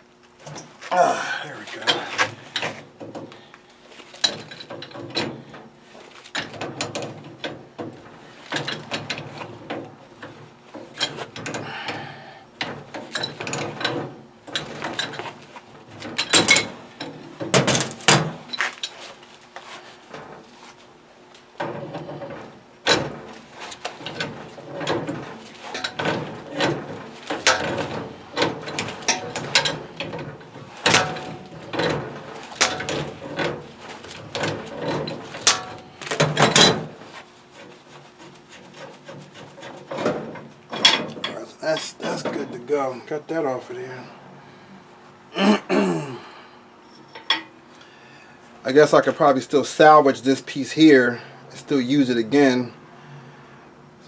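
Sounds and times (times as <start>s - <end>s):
metal clicking and clanking: 4.2s - 5.7s, 6.3s - 12.0s, 12.6s - 19.0s, 21.6s - 42.6s.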